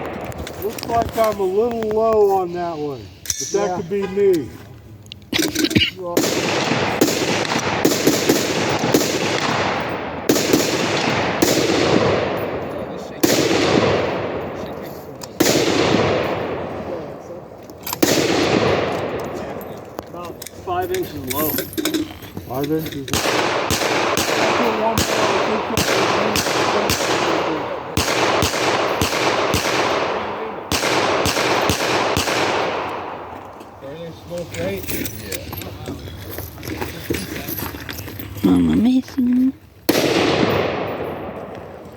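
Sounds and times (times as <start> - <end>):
gunshots with rolling echo: 0.0 - 1.8, 6.0 - 21.4, 23.1 - 34.4, 39.8 - 41.9.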